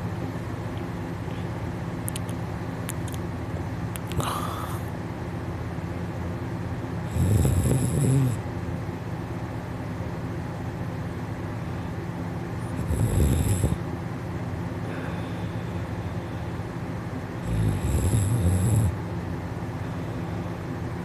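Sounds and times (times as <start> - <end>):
steady background hum: 0.0 - 21.0
person snoring: 7.1 - 8.4, 12.8 - 13.8, 17.4 - 19.0.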